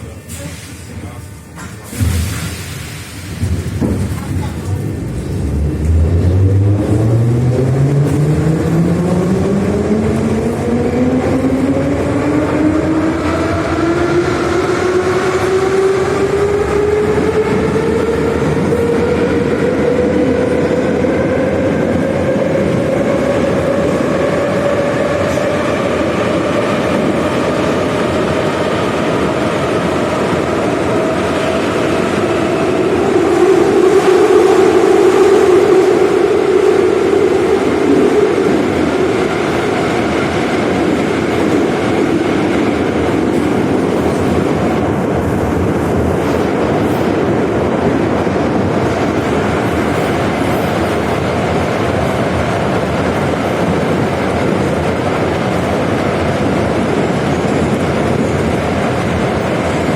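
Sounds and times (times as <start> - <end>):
wheels rumbling on track: 0.0 - 59.9
metro train motor whine accelerating: 4.9 - 59.9.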